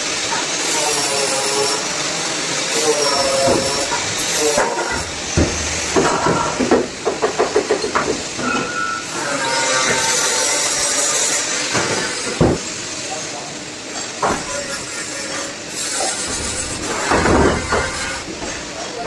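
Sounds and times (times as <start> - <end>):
compressed air hissing: 1.5 - 9.0, 10.0 - 19.0
short knocks: 3.3 - 8.6, 16.3 - 19.0.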